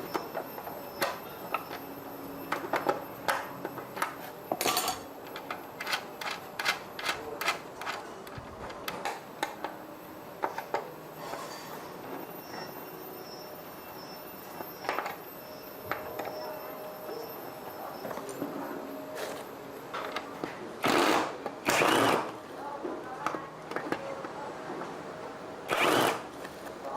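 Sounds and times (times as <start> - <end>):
tools and metal parts clattering: 0.0 - 9.1.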